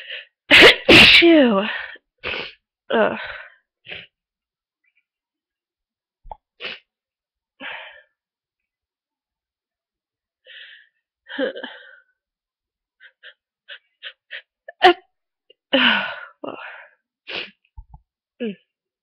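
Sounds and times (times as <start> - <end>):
person sneezing: 0.5 - 1.3
person sniffling: 2.2 - 2.6
person breathing: 10.4 - 11.0.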